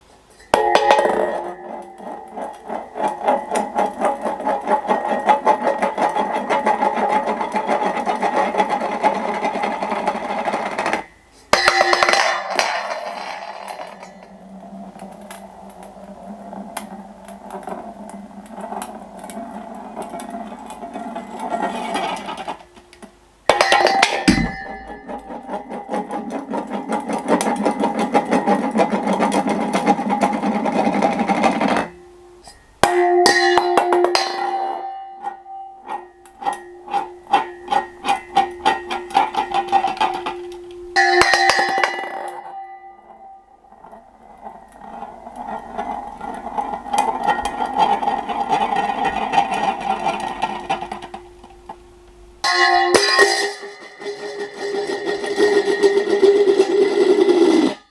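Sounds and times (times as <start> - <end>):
tin bowl clattering on hard floor: 0.4 - 15.8, 18.5 - 22.8, 23.5 - 32.0, 32.8 - 42.6, 52.4 - 57.9.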